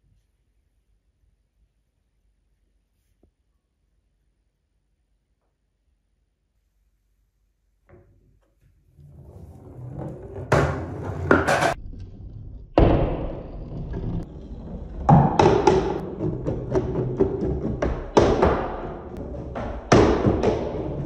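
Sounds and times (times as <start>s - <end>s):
balls rolling on wooden track: 8.9s - 21.0s
balls clacking: 9.5s - 11.8s, 12.8s - 21.0s.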